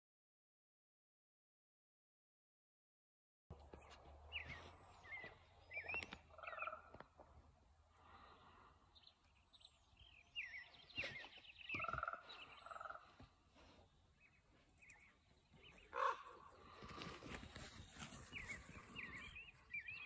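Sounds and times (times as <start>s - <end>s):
small birds chirping: 3.6s - 20.0s
ravens gurgling calls: 11.7s - 13.3s, 15.8s - 17.4s.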